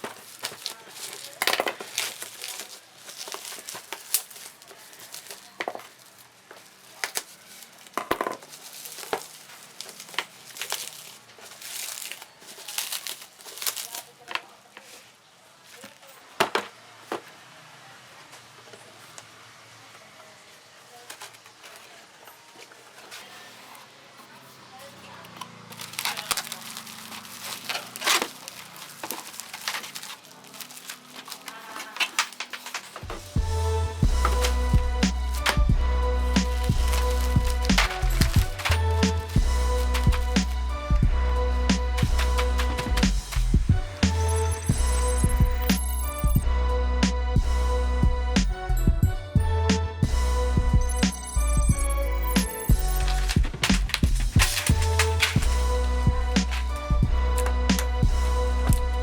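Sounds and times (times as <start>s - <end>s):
clicks of small hard pieces: 0.0s - 6.0s
plastic packaging crinkling: 0.0s - 16.4s, 20.8s - 41.0s, 41.8s - 46.4s, 50.8s - 58.9s
keyboard rustling: 0.0s - 17.4s, 20.6s - 46.5s, 50.0s - 59.0s.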